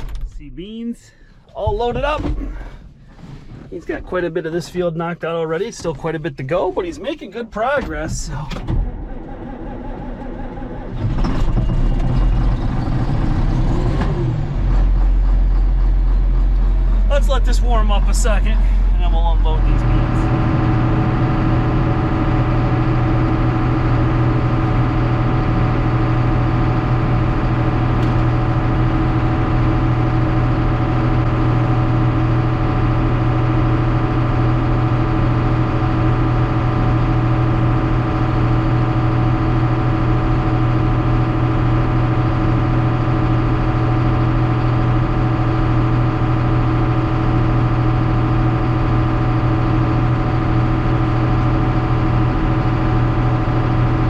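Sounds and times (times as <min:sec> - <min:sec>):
farm vehicle engine idling: 0:14.4 - 0:54.0.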